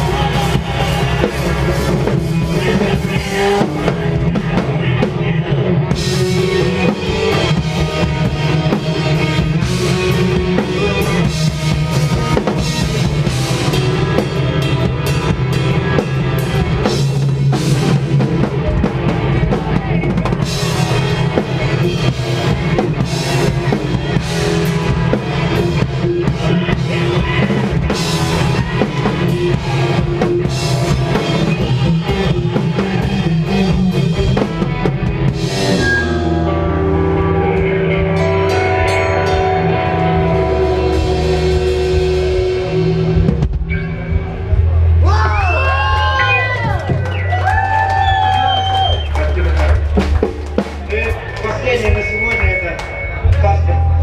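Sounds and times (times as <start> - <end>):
rock band playing live: 0.0 - 54.0
bass drum and snare: 49.7 - 52.8.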